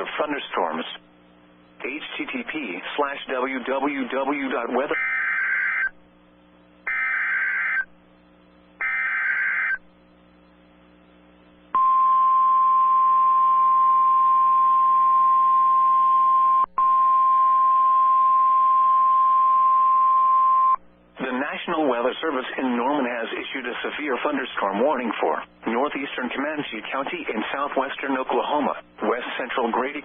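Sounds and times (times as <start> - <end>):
steady warning alarm tone: 4.9 - 6.0, 6.9 - 7.9, 8.8 - 9.8.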